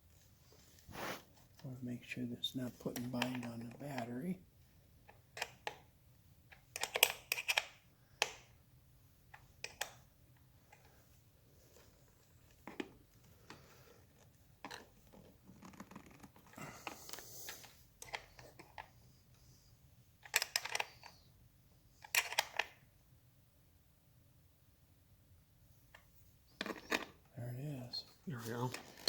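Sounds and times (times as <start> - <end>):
scraping and rustling: 0.5 - 1.6.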